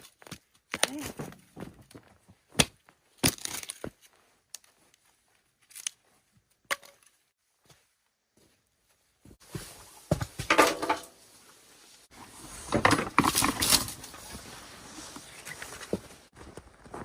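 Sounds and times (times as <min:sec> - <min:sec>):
dry branches crackling and snapping: 0:02.6 - 0:03.8.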